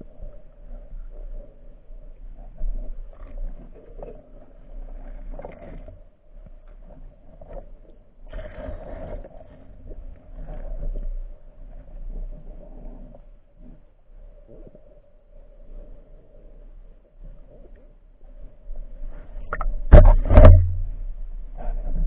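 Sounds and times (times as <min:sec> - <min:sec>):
muffled water movement: 0:00.0 - 0:22.0
knocks and scrapes underwater: 0:02.4 - 0:13.8, 0:17.2 - 0:22.0
steady low hum: 0:19.2 - 0:22.0.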